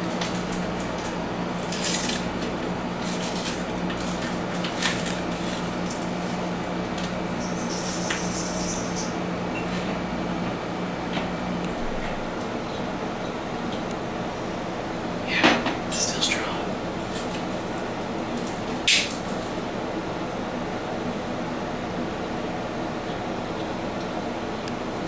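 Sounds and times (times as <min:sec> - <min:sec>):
glass and metal clinking: 0:07.4 - 0:09.2.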